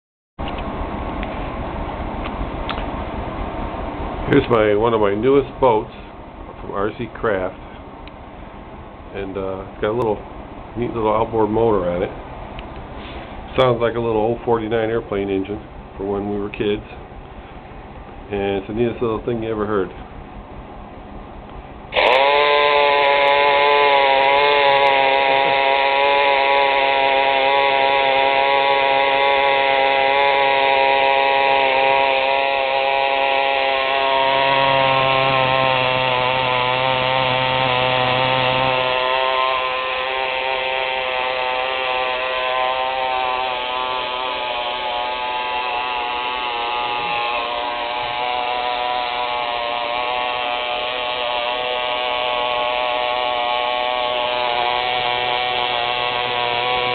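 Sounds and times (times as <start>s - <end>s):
toy motor high-pitched whine: 21.9s - 56.9s.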